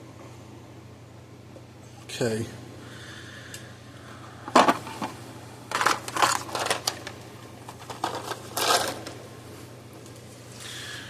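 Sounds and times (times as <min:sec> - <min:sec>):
parts clattering and rustling: 0:04.4 - 0:09.2.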